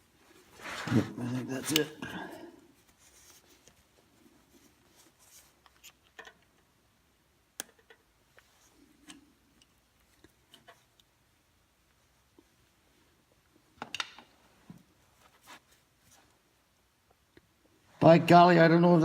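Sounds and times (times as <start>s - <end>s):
faint clicks and handling: 2.8s - 6.7s, 7.5s - 11.2s.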